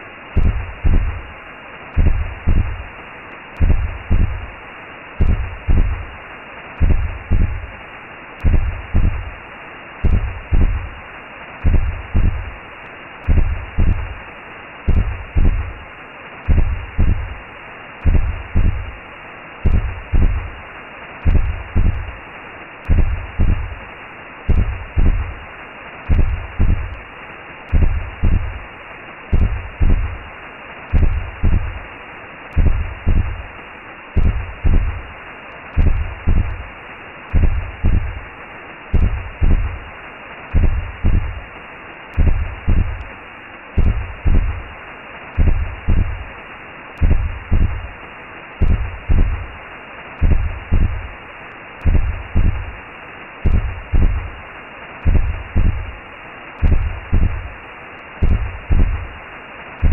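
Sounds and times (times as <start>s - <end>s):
constant whooshing hiss: 0.0s - 59.9s
heartbeat double thump: 0.4s - 1.3s, 2.0s - 2.9s, 3.6s - 4.5s, 5.2s - 6.1s, 6.8s - 7.7s, 8.4s - 9.3s, 10.0s - 10.9s, 11.6s - 12.5s, 13.2s - 14.2s, 14.9s - 15.8s, 16.5s - 17.4s, 18.0s - 19.0s, 19.6s - 20.6s, 21.2s - 22.2s, 22.8s - 23.8s, 24.5s - 25.4s, 26.1s - 27.0s, 27.7s - 28.6s, 29.3s - 30.2s, 30.9s - 31.8s, 32.5s - 33.4s, 34.2s - 35.1s, 35.8s - 36.6s, 37.3s - 38.2s, 38.9s - 39.8s, 40.5s - 41.4s, 42.2s - 43.1s, 43.8s - 44.7s, 45.4s - 46.3s, 47.0s - 47.9s, 48.6s - 49.6s, 50.2s - 51.1s, 51.8s - 52.8s, 53.4s - 54.4s, 55.0s - 56.0s, 56.6s - 57.5s, 58.2s - 59.1s.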